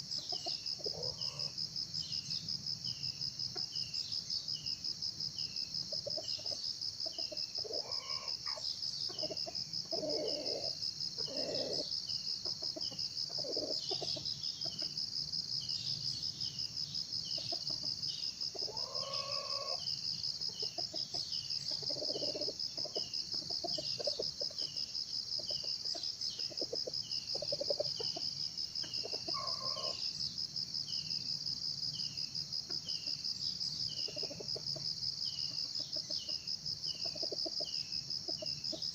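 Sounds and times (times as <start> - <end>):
junglefowl clucking calls: 0.0 - 1.6, 5.9 - 15.0, 17.4 - 19.8, 20.5 - 24.8, 25.4 - 30.0, 34.0 - 34.9, 37.0 - 38.9
high-pitched insect chorus: 0.0 - 38.9.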